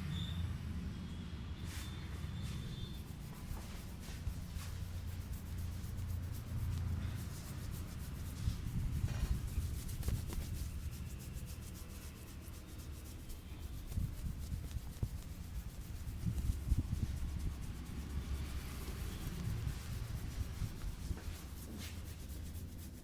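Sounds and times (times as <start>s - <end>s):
hands rubbing hair and scalp: 1.7s - 23.0s.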